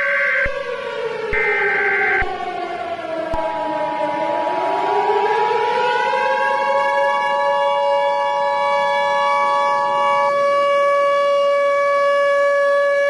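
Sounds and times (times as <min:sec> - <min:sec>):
civil defense siren: 0:00.0 - 0:13.0.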